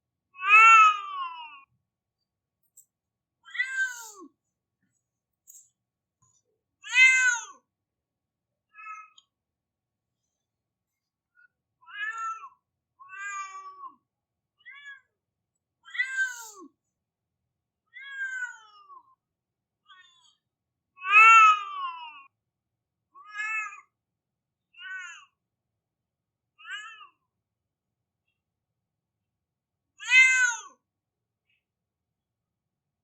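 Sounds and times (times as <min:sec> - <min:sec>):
cat meowing: 0:00.4 - 0:01.5.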